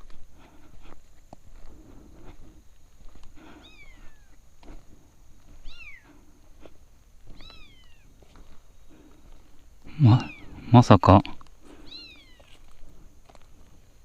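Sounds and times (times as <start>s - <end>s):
kitten meowing: 5.6s - 6.0s, 7.4s - 8.0s, 11.9s - 12.5s.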